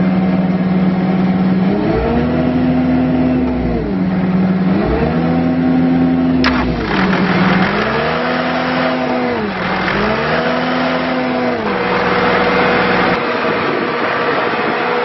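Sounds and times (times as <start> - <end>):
diesel engine revving: 1.6 - 13.4.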